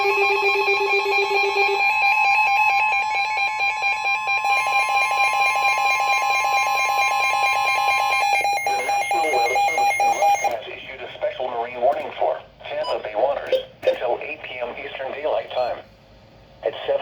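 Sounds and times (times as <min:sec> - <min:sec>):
rapidly pulsing electronic tone: 0:00.0 - 0:10.6
steady high electronic tone: 0:00.0 - 0:10.6.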